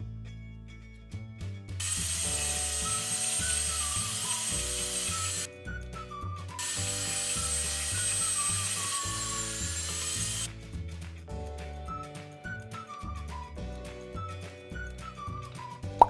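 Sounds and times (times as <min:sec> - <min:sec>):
light background music: 0:00.0 - 0:16.0
toy drill whirring: 0:01.8 - 0:05.5, 0:06.6 - 0:10.5.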